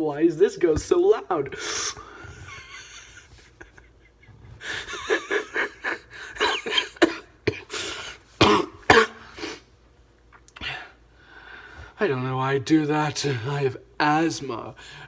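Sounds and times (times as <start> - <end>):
person coughing wheezily: 6.4 - 9.6.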